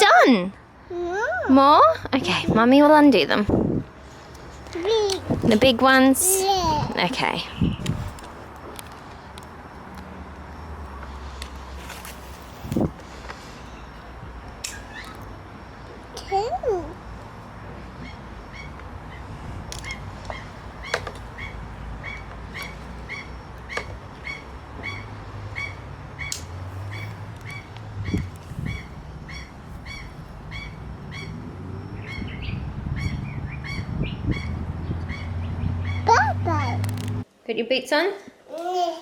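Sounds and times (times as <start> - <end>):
bird chirping: 18.0 - 36.8
sharp clicks: 36.8 - 37.2.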